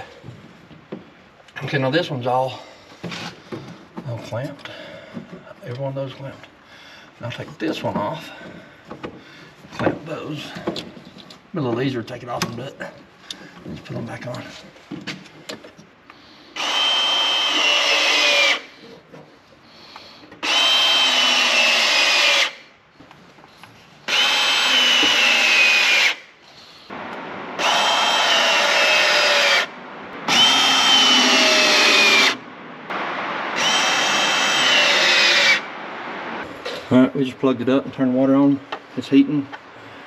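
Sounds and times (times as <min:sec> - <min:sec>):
crimping tool motor whine: 0:20.4 - 0:22.6, 0:24.1 - 0:26.2, 0:26.9 - 0:36.4.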